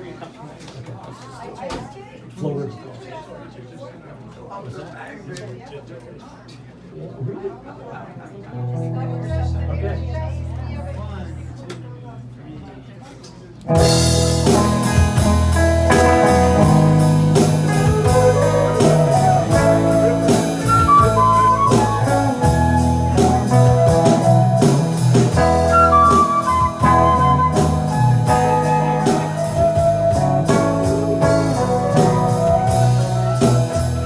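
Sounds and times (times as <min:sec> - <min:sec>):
guitar: 0:08.5 - 0:11.9, 0:13.6 - 0:34.0
electric bass: 0:08.8 - 0:11.6, 0:13.7 - 0:34.0
steady drum beat: 0:13.7 - 0:34.0
saxophone melody: 0:14.0 - 0:34.0.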